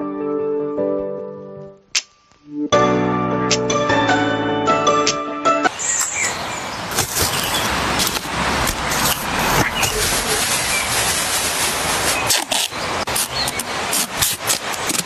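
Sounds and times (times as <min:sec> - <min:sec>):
sharp clicks: 0:01.9 - 0:02.2
bird chirps: 0:05.7 - 0:07.7.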